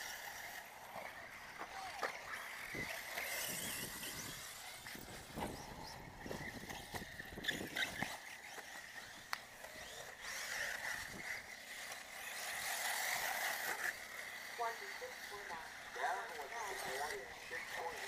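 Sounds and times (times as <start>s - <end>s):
high motor whine: 0.0s - 18.0s.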